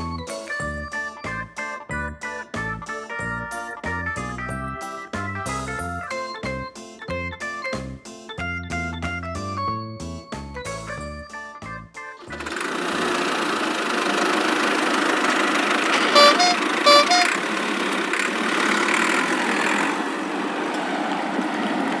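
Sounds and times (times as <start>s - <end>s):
keyboard melody: 0.0s - 12.4s, 16.0s - 17.4s
cartoon vehicle engine: 12.2s - 20.8s
horn beeping: 15.9s - 17.5s.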